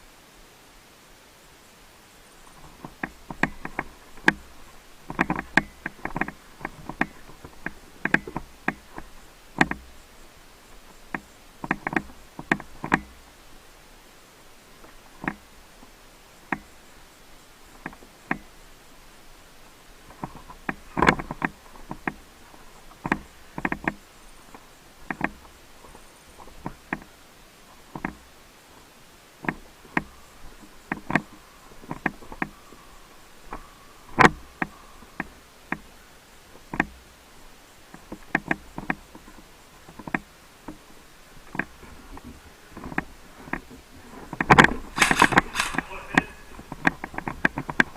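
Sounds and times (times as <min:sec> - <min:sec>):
airsoft gun shots: 0:44.9 - 0:46.4.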